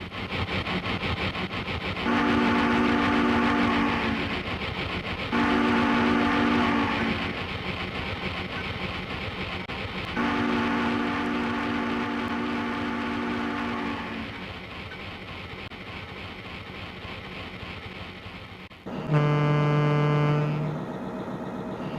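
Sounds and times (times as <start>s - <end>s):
train rattling along: 0.0s - 21.9s
train horn blasts: 2.1s - 4.3s, 5.3s - 7.2s, 10.2s - 14.3s, 18.9s - 20.8s.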